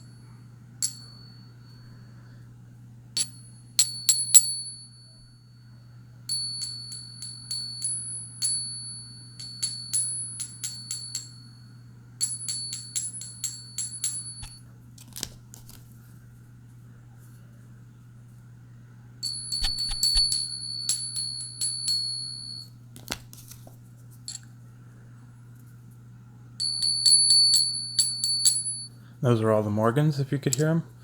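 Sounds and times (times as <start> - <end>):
silver coins ringing when tapped: 3.2 - 5.1, 6.3 - 11.6, 12.2 - 14.6, 19.2 - 22.7, 26.6 - 28.9.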